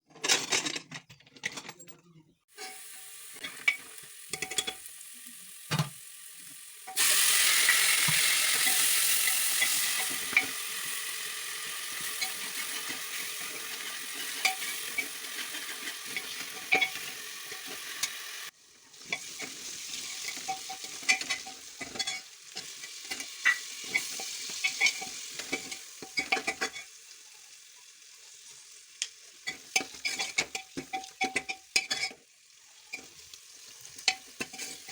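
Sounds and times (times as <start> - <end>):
food frying in hot oil: 2.5 - 34.9
loud sizzle: 2.5 - 34.9
metal spoon scraping pan: 2.6 - 4.9, 6.9 - 18.2, 19.0 - 26.9, 29.4 - 32.2, 33.9 - 34.9.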